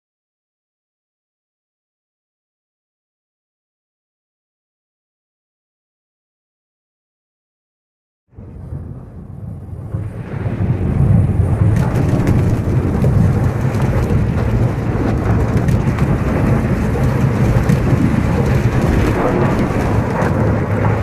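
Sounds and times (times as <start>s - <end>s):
avalanche deep rumble: 8.3s - 21.0s.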